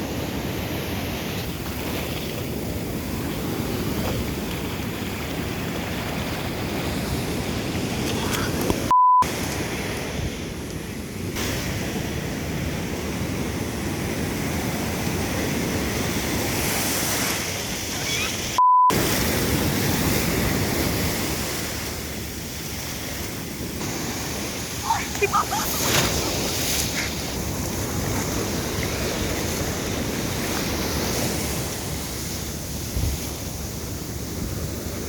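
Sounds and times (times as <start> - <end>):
ocean surf washing onto beach: 0.0 - 35.0
censor bleep: 8.9 - 9.3, 18.6 - 19.0.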